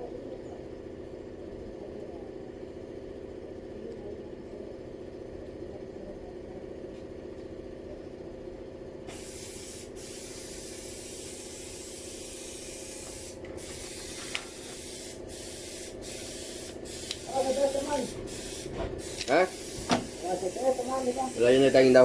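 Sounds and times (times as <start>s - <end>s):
pressurised spray hissing: 9.1s - 22.0s.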